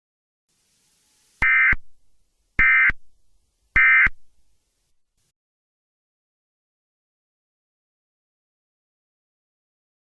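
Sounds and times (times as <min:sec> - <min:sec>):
buzzing digital tone bursts: 0:00.6 - 0:02.0, 0:02.6 - 0:03.1, 0:03.8 - 0:04.3.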